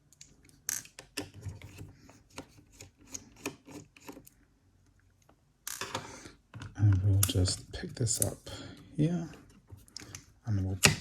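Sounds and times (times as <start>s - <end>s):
screwdriver clicking and scraping: 0.7s - 4.3s.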